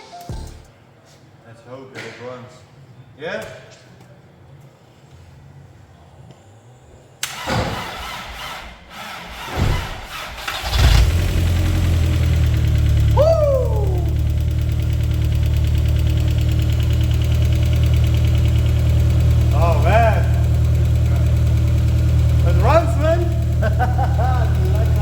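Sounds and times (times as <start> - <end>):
engine starter cranking: 7.2 - 12.8
car engine idling: 10.1 - 25.0.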